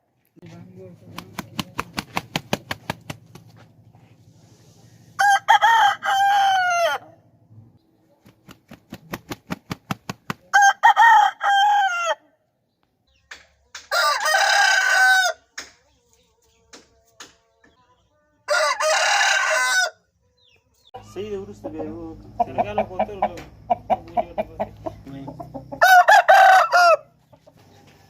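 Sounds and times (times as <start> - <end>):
roosters crowing: 5.0 - 7.3, 10.5 - 12.2, 13.9 - 15.5, 18.5 - 20.1, 21.0 - 28.0.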